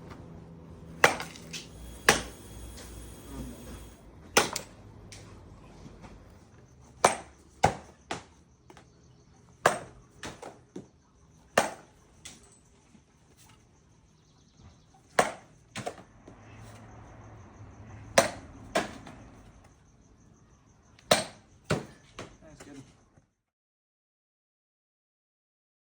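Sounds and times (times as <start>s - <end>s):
baseball bat cracking balls: 0.9s - 2.9s, 3.8s - 5.3s, 6.8s - 8.9s, 9.6s - 12.5s, 15.0s - 16.4s, 18.1s - 19.2s, 21.0s - 22.4s.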